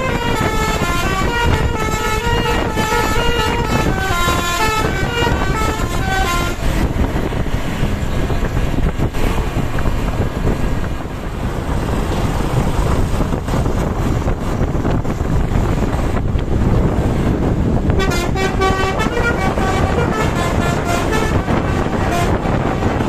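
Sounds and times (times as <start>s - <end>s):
bus horn playing a tune: 0.0s - 8.4s, 17.6s - 23.0s
vehicle engine and road rumble: 0.0s - 23.0s.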